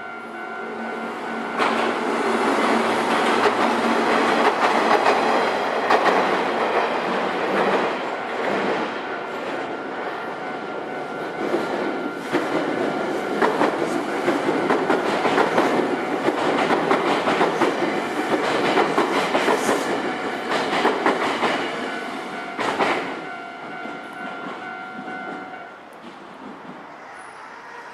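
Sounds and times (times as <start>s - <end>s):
level crossing warning bell: 0.0s - 2.4s, 8.0s - 16.6s, 21.7s - 25.8s
train wheels clacking over rail joints: 1.6s - 8.9s, 11.4s - 26.9s.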